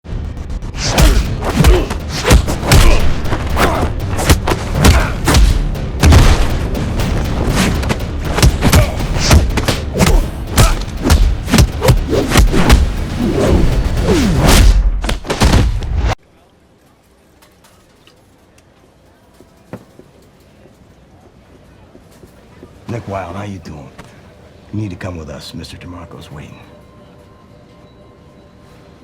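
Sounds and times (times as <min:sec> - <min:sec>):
music: 0:00.1 - 0:16.0, 0:26.1 - 0:29.0
heavy booming punch impacts: 0:00.1 - 0:16.2.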